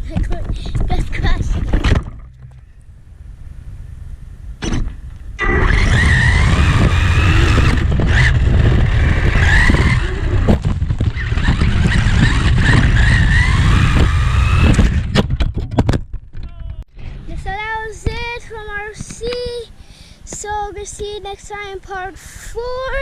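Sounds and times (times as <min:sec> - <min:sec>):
tyres rumbling over ground: 0:00.0 - 0:19.6
electric motor whine: 0:05.4 - 0:10.5, 0:11.2 - 0:15.1.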